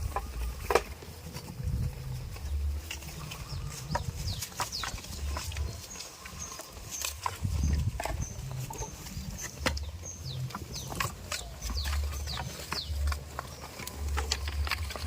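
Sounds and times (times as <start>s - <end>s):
low rumble: 0.0s - 5.8s.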